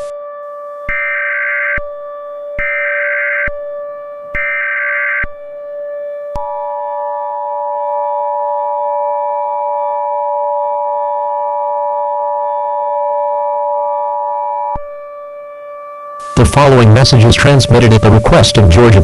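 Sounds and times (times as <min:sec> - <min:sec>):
synthesizer drone: 0:00.0 - 0:19.0.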